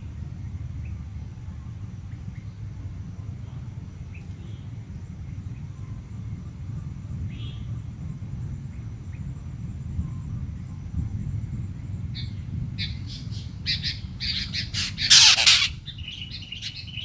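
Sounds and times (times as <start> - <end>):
low rumbling noise: 0.0 - 17.0
faint bird chirps: 12.2 - 17.0.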